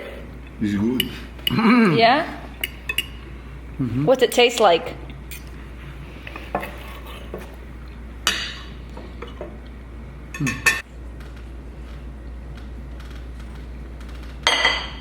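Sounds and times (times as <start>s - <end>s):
cutlery clinking against plates: 2.6s - 3.2s, 10.4s - 10.8s, 14.4s - 15.0s.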